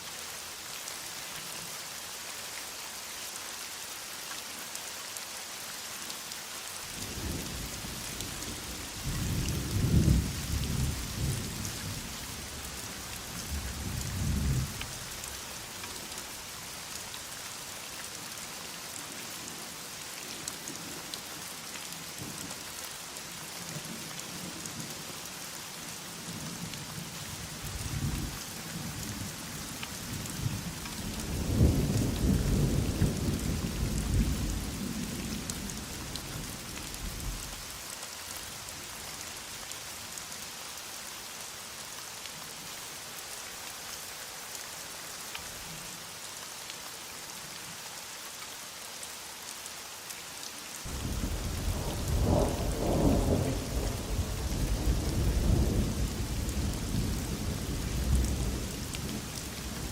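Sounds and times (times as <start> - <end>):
heavy rain falling: 0.0 - 59.9
thunder rumbling: 50.9 - 59.2.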